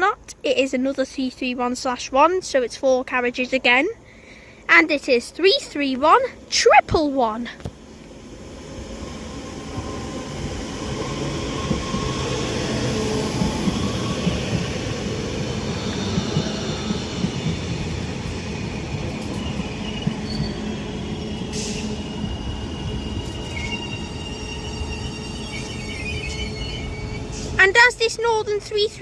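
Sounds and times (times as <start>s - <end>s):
electric train slowing to a stop: 7.7s - 29.0s
wheel and brake squeal: 19.4s - 27.6s.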